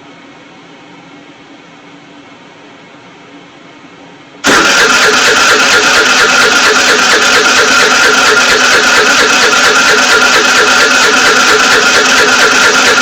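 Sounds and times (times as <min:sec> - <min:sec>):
scooter starter cranking engine: 0:04.4 - 0:13.0.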